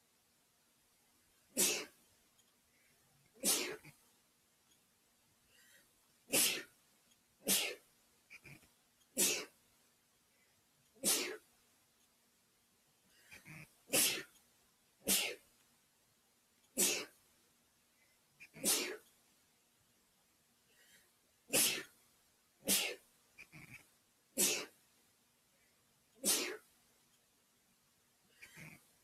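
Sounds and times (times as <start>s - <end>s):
person sneezing: 1.6s - 2.0s, 3.4s - 3.8s, 6.3s - 6.7s, 7.4s - 7.8s, 9.2s - 9.5s, 11.0s - 11.4s, 13.9s - 14.3s, 15.0s - 15.4s, 16.8s - 17.2s, 18.5s - 19.0s, 21.5s - 21.9s, 22.6s - 23.0s, 24.4s - 24.8s, 26.2s - 26.7s.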